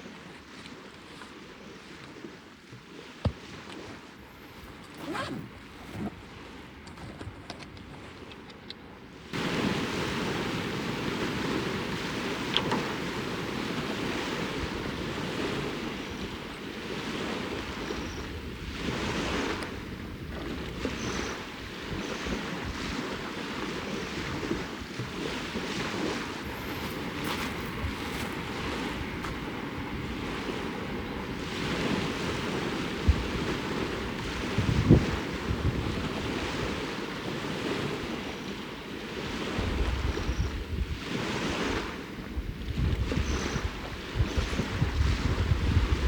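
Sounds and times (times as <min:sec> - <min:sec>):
lake waves washing on shore: 0:00.0 - 0:46.0
wind on microphone: 0:09.4 - 0:46.0.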